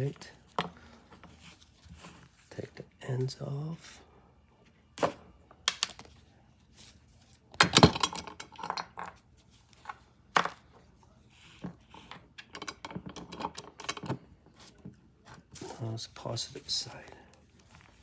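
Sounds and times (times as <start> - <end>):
metal parts and tools clinking: 7.6 - 9.0, 12.4 - 14.2.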